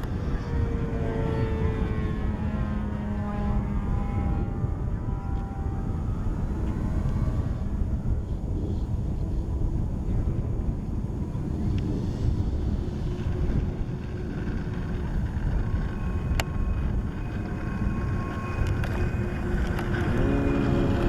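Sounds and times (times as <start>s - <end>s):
model jet fans whining: 0.0s - 21.0s
wind on microphone: 0.0s - 21.0s.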